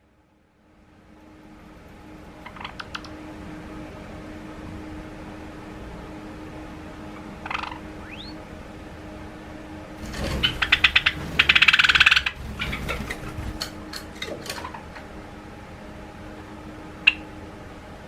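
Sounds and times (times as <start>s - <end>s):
rapid bird chattering: 2.4s - 3.2s, 7.4s - 8.4s, 10.0s - 13.6s
sparrow chirping: 7.4s - 8.4s, 10.0s - 13.6s.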